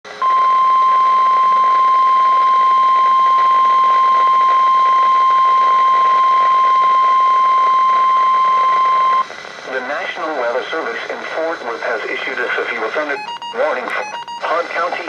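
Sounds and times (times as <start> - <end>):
steady alarm beep tone: 0.2 - 9.2, 13.2 - 14.5
radio hiss: 5.4 - 15.0.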